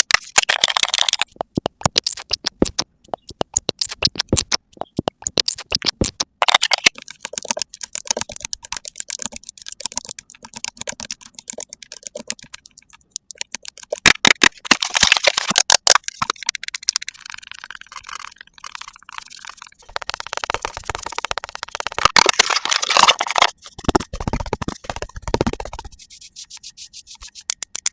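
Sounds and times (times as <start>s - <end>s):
crisp tapping and clicking: 0.0s - 27.9s
brushy scratching: 18.0s - 27.9s.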